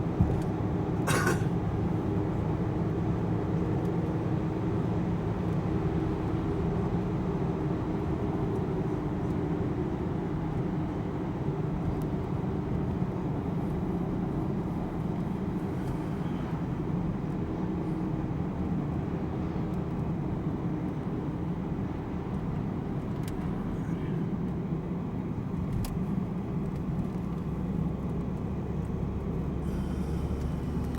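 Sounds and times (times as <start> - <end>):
vehicle engine drone and road noise: 0.0 - 30.9.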